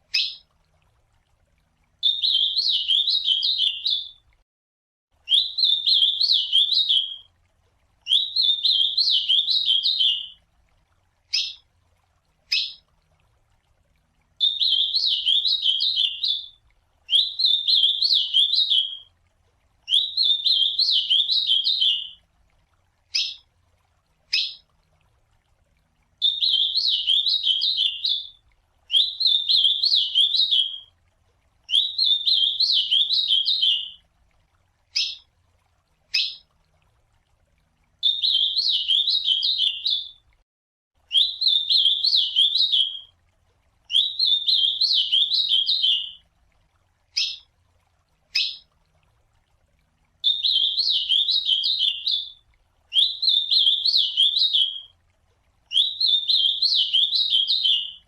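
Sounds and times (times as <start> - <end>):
bird singing warbled phrases: 0.1 - 0.5, 2.0 - 4.2, 5.3 - 7.3, 8.0 - 10.4, 11.3 - 11.6, 12.5 - 12.9, 14.4 - 19.1, 19.9 - 22.2, 23.1 - 23.4, 24.3 - 24.6, 26.2 - 30.9, 31.7 - 34.0, 35.0 - 35.3, 36.1 - 36.5, 38.0 - 40.2, 41.1 - 43.1, 43.9 - 46.2, 47.1 - 47.5, 48.3 - 48.7, 50.2 - 54.9, 55.7 - 58.0.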